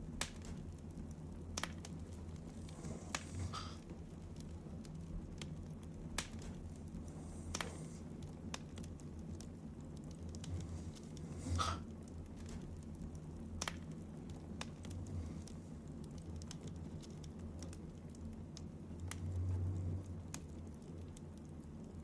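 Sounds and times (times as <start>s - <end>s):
woman breathing softly: 2.3s - 4.0s, 7.0s - 8.2s, 10.4s - 11.9s, 14.8s - 15.9s.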